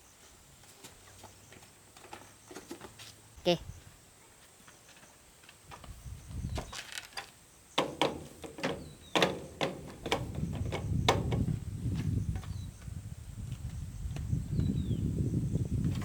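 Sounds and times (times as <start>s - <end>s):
sharp knocks and clicks: 7.2s - 11.6s.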